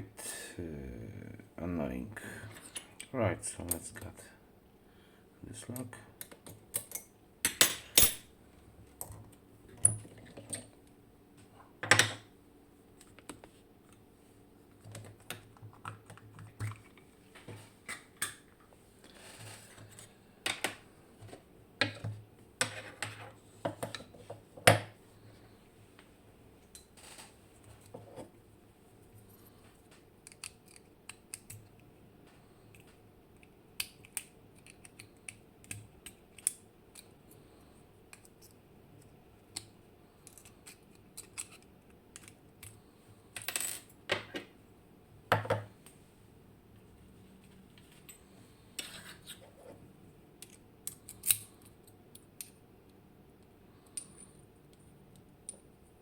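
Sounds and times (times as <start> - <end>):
metallic clicks of lock parts: 30.2 - 31.8, 32.7 - 37.1, 39.5 - 42.8, 50.4 - 52.6.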